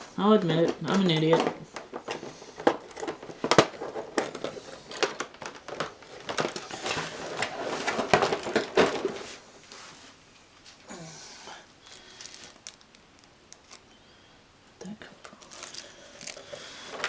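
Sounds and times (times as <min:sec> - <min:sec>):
plastic packaging crinkling: 0:00.8 - 0:09.4, 0:11.8 - 0:14.0, 0:15.2 - 0:17.0.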